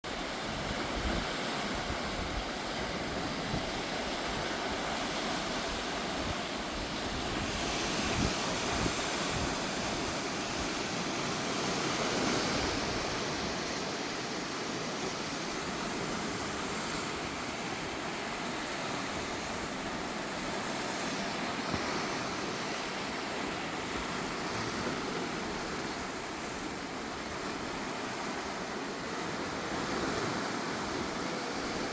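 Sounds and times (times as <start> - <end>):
waves washing against rocks: 0.1 - 31.9
wind buffeting microphone: 0.2 - 14.0.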